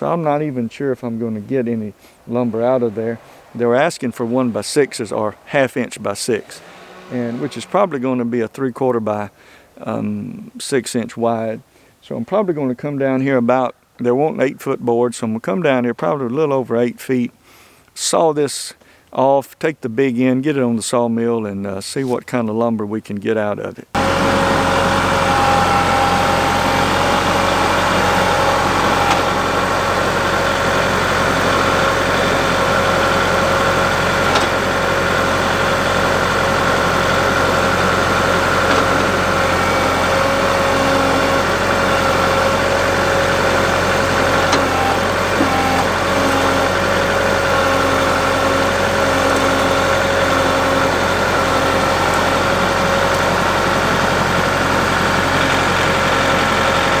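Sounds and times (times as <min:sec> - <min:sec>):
engine idling: 0:00.0 - 0:08.0, 0:24.0 - 0:57.0.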